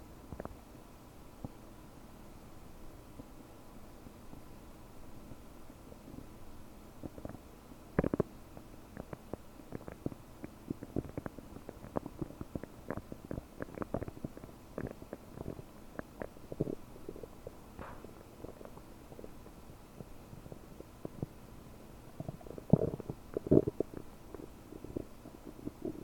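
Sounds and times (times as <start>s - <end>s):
stomach gurgling and bubbling: 0.2s - 0.7s, 6.0s - 26.0s.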